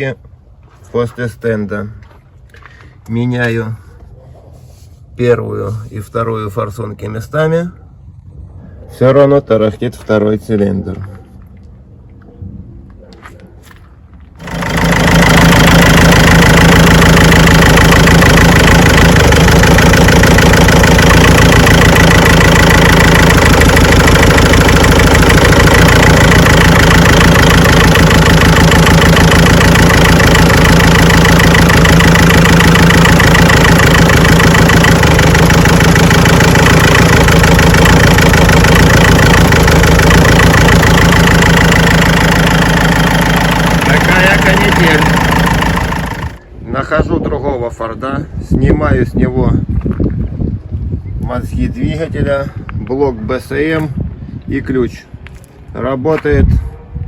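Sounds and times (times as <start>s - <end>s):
diesel engine idling with clatter: 14.0s - 46.6s
diesel engine starting: 14.4s - 46.5s.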